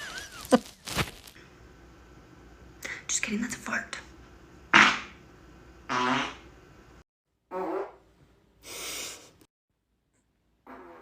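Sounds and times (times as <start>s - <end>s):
farts: 4.7s - 5.2s, 5.9s - 6.5s, 7.5s - 8.1s, 10.6s - 11.0s.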